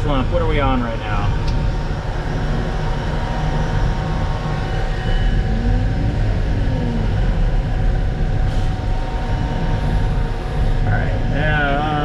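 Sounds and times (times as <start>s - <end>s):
faint rising and falling tone: 5.0s - 8.2s.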